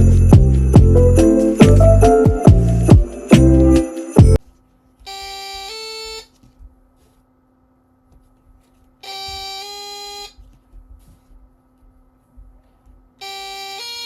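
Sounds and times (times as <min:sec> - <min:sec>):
electronic two-tone train horn: 0:13.2 - 0:14.0.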